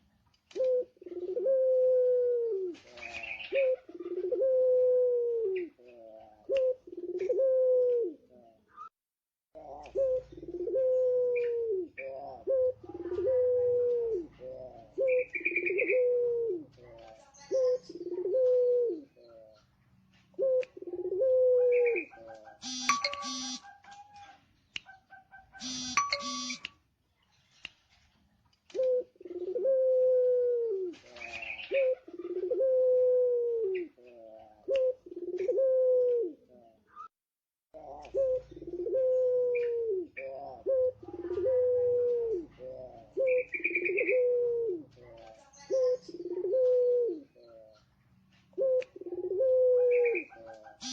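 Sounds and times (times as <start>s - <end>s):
dove cooing: 0.0s - 8.8s, 9.6s - 26.6s, 28.7s - 37.1s, 37.8s - 50.9s
short buzzy tones: 22.6s - 23.6s, 25.6s - 26.7s.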